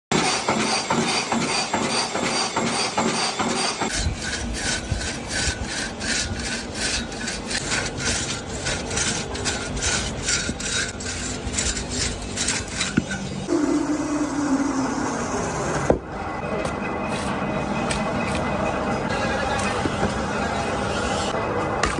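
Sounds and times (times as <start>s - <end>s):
tool scraping wood: 0.2s - 13.5s.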